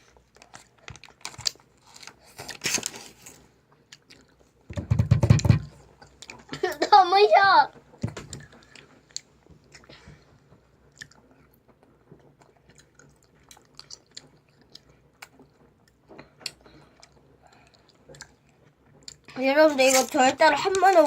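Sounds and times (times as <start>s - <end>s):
chewing candy with mouth clicks: 3.7s - 4.6s, 10.8s - 20.2s.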